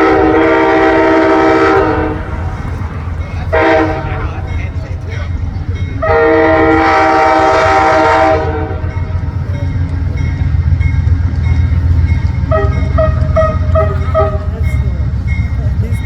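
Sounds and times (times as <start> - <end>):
train horn blast: 0.0 - 5.4, 6.0 - 9.2, 12.4 - 15.1
train rumbling: 0.0 - 16.0.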